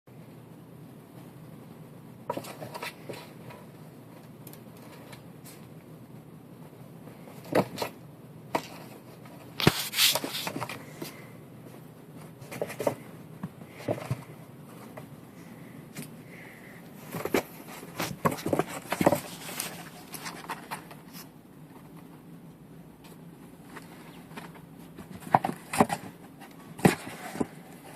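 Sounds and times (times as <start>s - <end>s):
cat moving in cardboard box: 17.0s - 21.3s.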